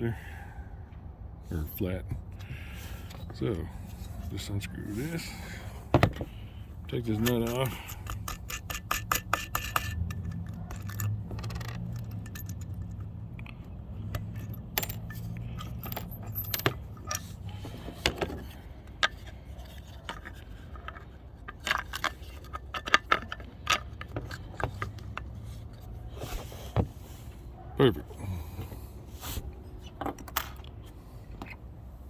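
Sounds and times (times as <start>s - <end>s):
metal hardware clicking and clinking: 6.9s - 25.9s.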